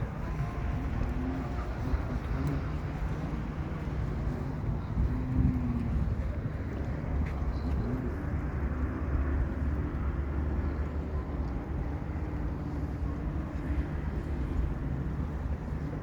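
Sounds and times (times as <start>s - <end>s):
low engine rumble: 0.0s - 16.0s.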